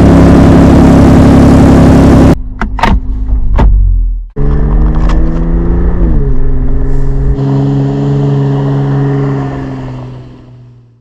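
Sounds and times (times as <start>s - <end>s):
car exhaust: 0.0s - 2.4s, 4.4s - 11.0s
deep low rumble: 3.1s - 7.4s.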